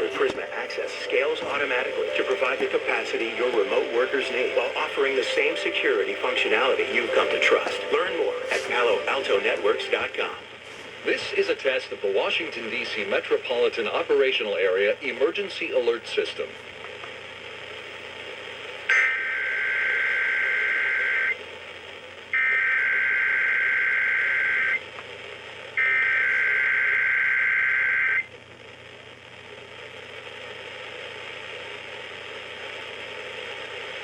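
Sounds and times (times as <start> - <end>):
radio hiss: 0.0 - 23.2.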